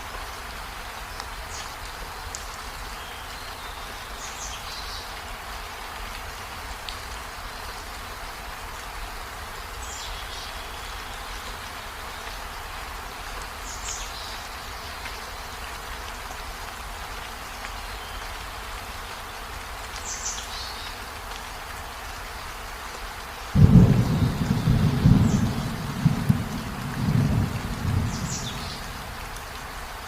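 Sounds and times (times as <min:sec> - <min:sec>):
steady rain: 0:00.0 - 0:30.0
low rumble of thunder: 0:23.6 - 0:29.4.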